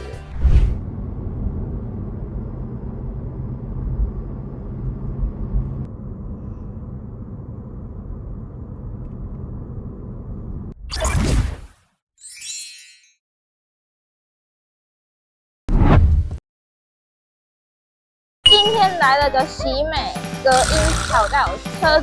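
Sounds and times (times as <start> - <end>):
road and tyre rumble inside car: 0.8 - 10.8.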